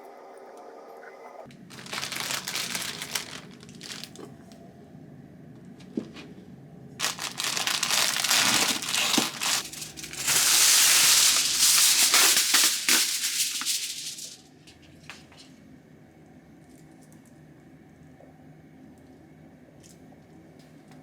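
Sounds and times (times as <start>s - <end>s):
packaging crinkling: 1.6s - 4.3s, 7.0s - 14.4s.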